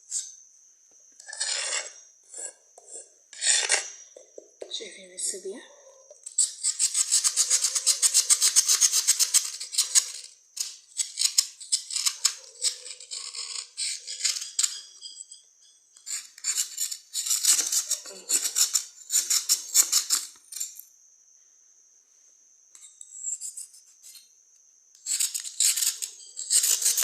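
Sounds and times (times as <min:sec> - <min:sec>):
cuttlebone rasping scrapes: 0:01.2 - 0:04.0, 0:06.3 - 0:10.3, 0:11.0 - 0:20.8, 0:25.0 - 0:27.0.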